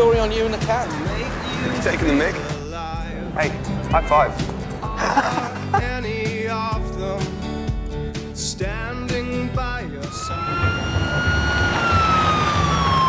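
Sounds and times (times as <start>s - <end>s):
music: 0.0s - 11.3s, 11.9s - 13.0s
siren falling in pitch: 10.1s - 13.0s.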